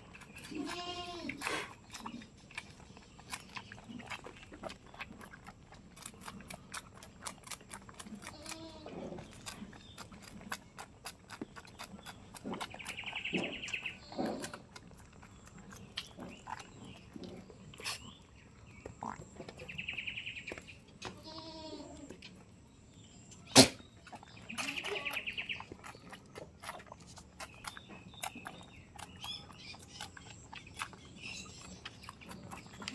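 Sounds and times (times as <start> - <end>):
goats bleating: 0.5 - 1.4, 21.1 - 22.0.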